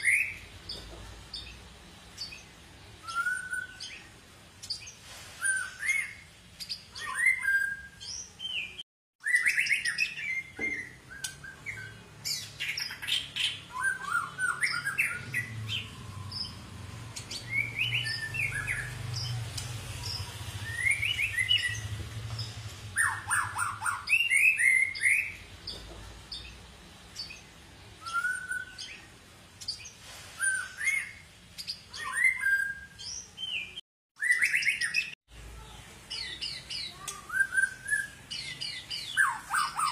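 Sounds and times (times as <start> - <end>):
bird singing whistled phrases: 3.0 - 4.0, 5.4 - 6.2, 6.9 - 12.0, 12.6 - 19.3, 20.0 - 21.9, 23.0 - 25.4, 28.0 - 29.0, 30.4 - 31.2, 31.9 - 35.2, 36.2 - 39.9.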